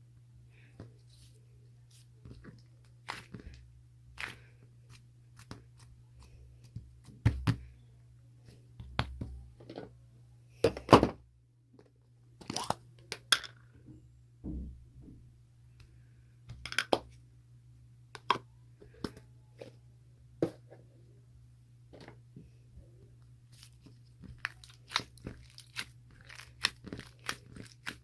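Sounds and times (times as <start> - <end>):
faint low hum: 0.0 - 28.0
objects being handled: 23.5 - 28.0.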